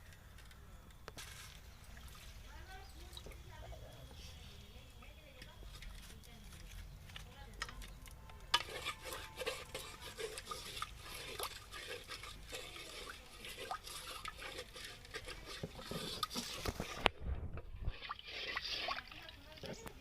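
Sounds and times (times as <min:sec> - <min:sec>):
spatula scraping a pan: 0:08.5 - 0:17.1, 0:17.8 - 0:19.3.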